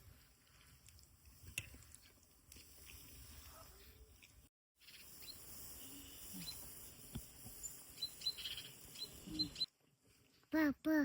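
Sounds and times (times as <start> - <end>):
steady outdoor hiss: 0.0 - 10.4
high bird chirps: 7.6 - 9.7.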